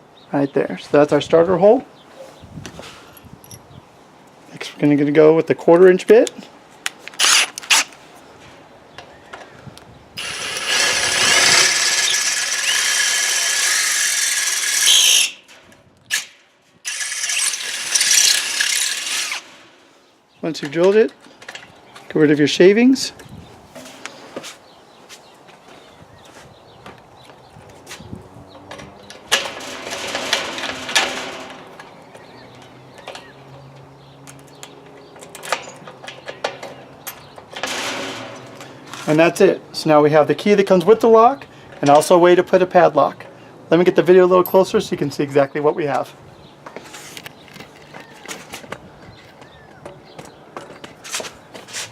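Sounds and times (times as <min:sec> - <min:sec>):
electric drill whining: 0:10.2 - 0:15.3, 0:16.9 - 0:19.5
metal latch clicks: 0:32.6 - 0:38.7.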